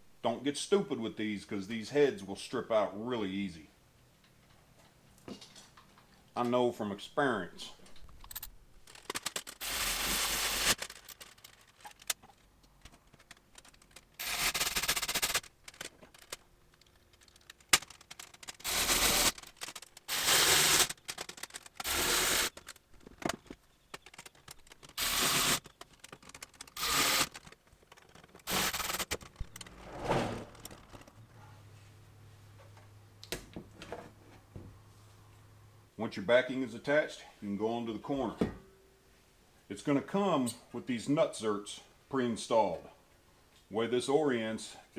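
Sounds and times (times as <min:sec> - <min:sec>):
wrench clicking and scraping: 0:08.0 - 0:22.8, 0:23.9 - 0:29.7.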